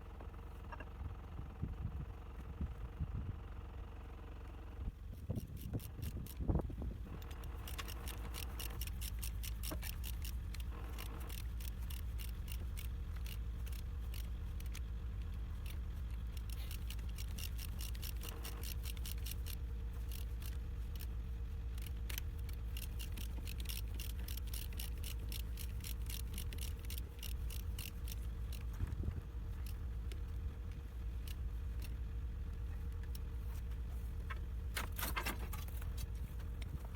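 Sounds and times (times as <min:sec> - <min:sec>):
tractor diesel engine rumbling: 0:00.0 - 0:36.9
rhythmic metallic clicking: 0:05.2 - 0:28.8.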